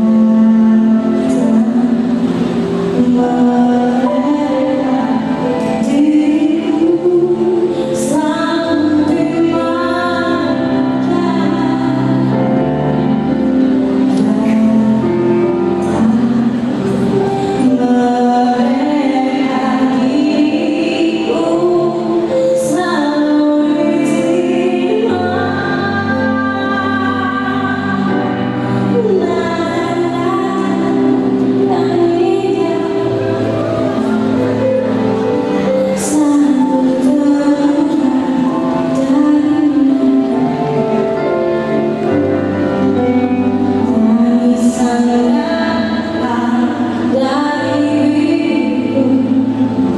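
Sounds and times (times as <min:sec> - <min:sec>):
instrumental accompaniment: 0:00.0 - 0:49.9
choir singing: 0:29.0 - 0:42.6.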